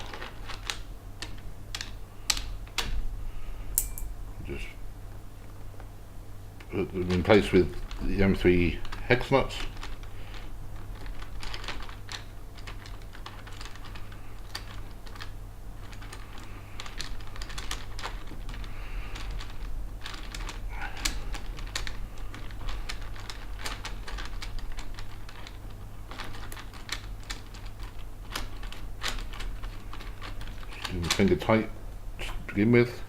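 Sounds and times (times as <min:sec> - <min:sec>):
steady low hum: 0:00.0 - 0:33.0.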